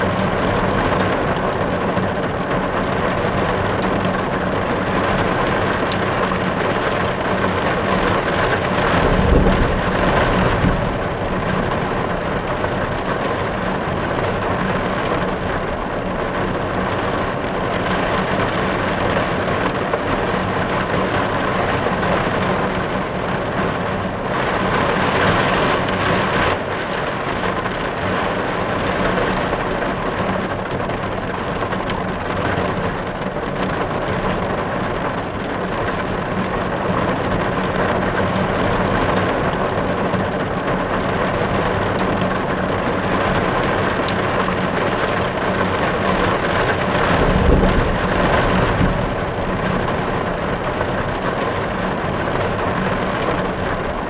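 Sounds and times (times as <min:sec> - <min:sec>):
rain drumming on car roof: 0:00.0 - 0:54.0
low rumble: 0:08.5 - 0:13.6, 0:46.6 - 0:51.9.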